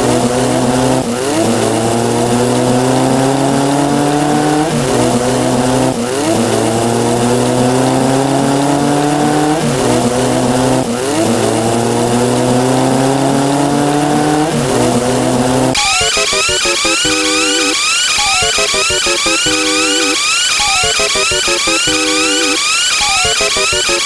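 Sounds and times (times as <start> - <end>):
buzzing electronic drone: 15.6 - 24.0
electronic rising blips: 15.8 - 24.0.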